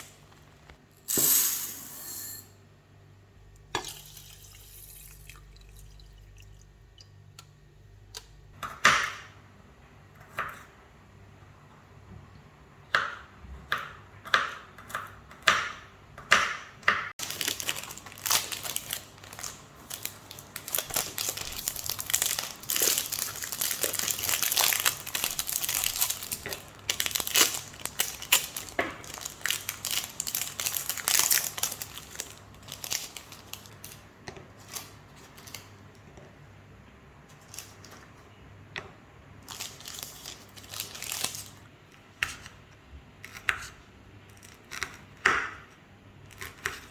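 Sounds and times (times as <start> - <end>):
wrapping crinkling and rustling: 17.2 - 35.8, 37.4 - 38.1, 39.4 - 41.6.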